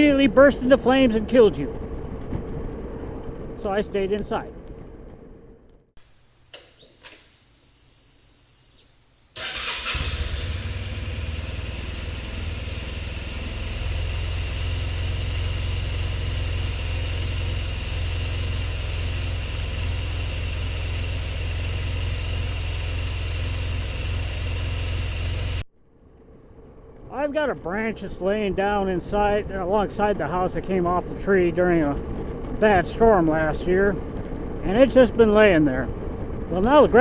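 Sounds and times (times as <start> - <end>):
scooter engine idling: 9.4 - 25.6.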